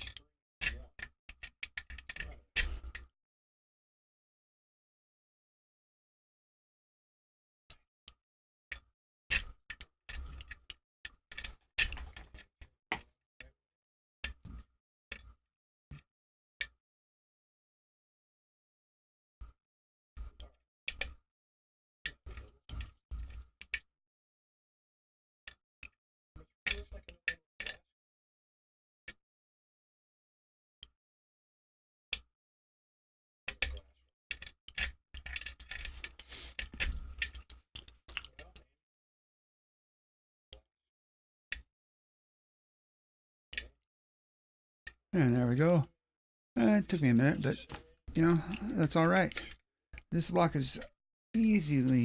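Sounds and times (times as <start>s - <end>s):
lock pick clicking and scraping: 35.3s - 38.5s
lock pick clicks and rattles: 37.2s - 38.6s.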